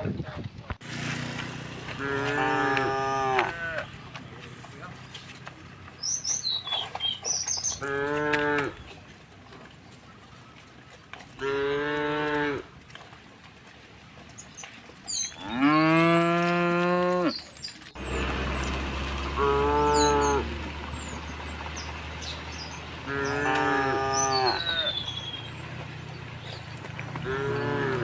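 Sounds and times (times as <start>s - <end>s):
cows mooing: 0.8s - 9.0s, 11.3s - 12.7s, 15.3s - 28.0s.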